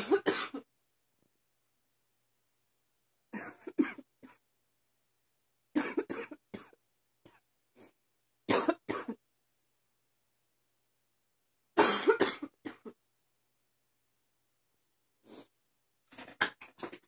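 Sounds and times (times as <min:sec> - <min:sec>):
woman coughing: 0:00.0 - 0:00.7, 0:03.4 - 0:04.4, 0:05.8 - 0:06.7, 0:08.5 - 0:09.2, 0:11.8 - 0:13.0.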